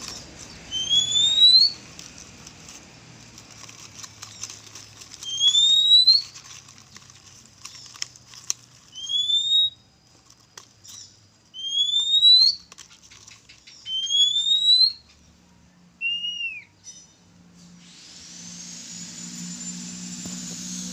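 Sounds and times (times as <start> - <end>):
bird shrill whistling calls: 0.1 - 1.8, 5.2 - 6.4, 8.9 - 9.9, 10.9 - 12.7, 13.6 - 15.2, 16.0 - 17.1.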